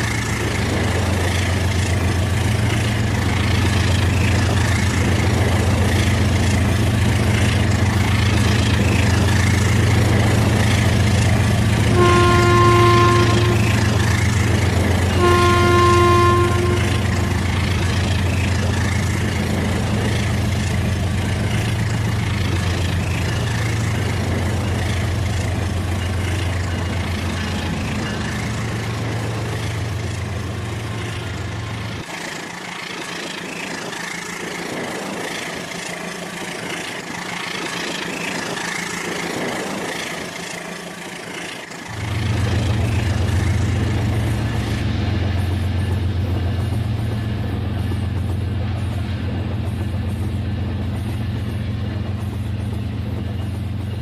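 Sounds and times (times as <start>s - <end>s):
low motor hum: 8.4s - 25.9s
electronic horn tone: 11.9s - 14.0s, 15.1s - 17.5s.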